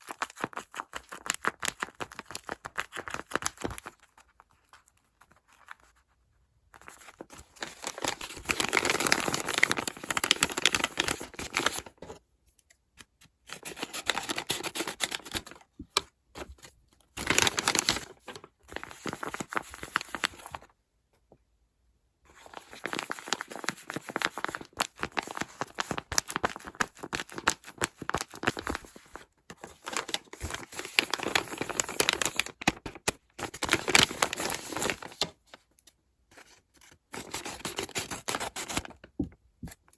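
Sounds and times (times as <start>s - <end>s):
paper tearing and crinkling: 17.2s - 20.4s, 29.7s - 35.3s.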